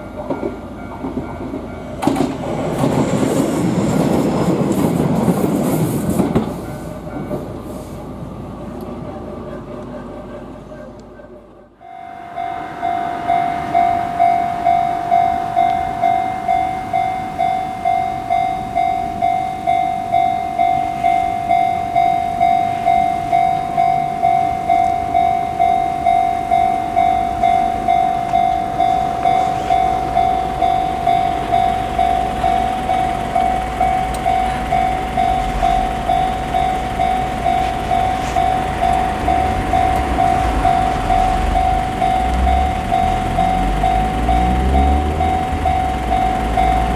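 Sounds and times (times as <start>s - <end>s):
train rumble: 0.0s - 46.9s
level-crossing alarm ringing: 11.8s - 46.9s.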